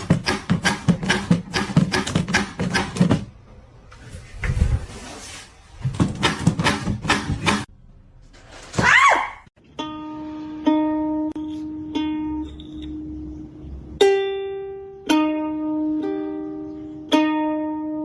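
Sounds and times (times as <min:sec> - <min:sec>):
plucked ukulele melody: 0:09.6 - 0:18.0.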